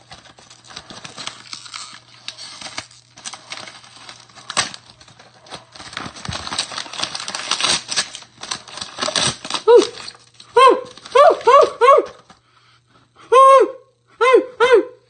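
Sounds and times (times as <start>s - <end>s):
packaging crinkling and clicking: 0.0s - 12.4s.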